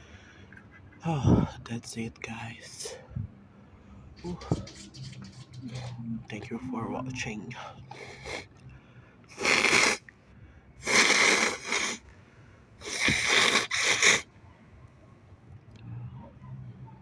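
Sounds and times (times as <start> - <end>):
person snorting through nose: 7.9 - 8.5, 9.3 - 10.0, 10.8 - 12.0, 12.8 - 14.3.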